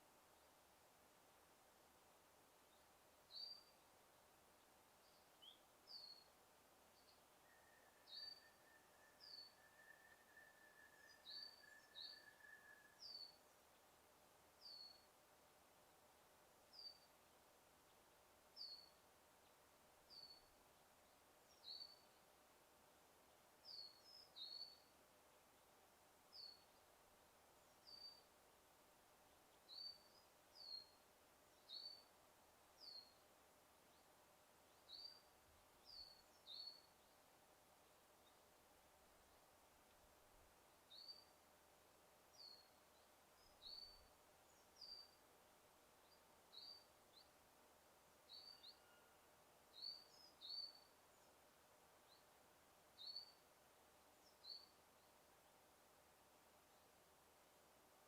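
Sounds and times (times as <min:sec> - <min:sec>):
faint forest hiss: 0:00.0 - 0:58.0
small bird chirping: 0:02.7 - 0:03.8, 0:05.0 - 0:06.3, 0:07.0 - 0:13.5, 0:14.6 - 0:15.1, 0:21.5 - 0:22.2, 0:23.7 - 0:24.9, 0:32.8 - 0:33.2, 0:34.7 - 0:37.2, 0:40.9 - 0:41.4, 0:42.3 - 0:45.2, 0:46.0 - 0:47.4, 0:48.3 - 0:51.4, 0:53.0 - 0:53.4, 0:54.2 - 0:55.2.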